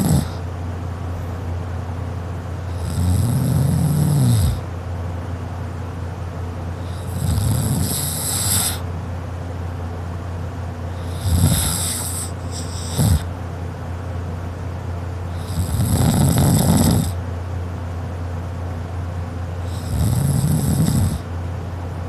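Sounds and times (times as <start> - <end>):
sharp snort: 0.0 - 0.4, 6.9 - 8.8, 11.0 - 13.3, 15.4 - 17.2, 19.7 - 21.3
woman snoring: 0.0 - 0.4, 2.7 - 4.6, 6.8 - 8.8, 11.0 - 13.3, 15.3 - 17.2, 19.7 - 21.3.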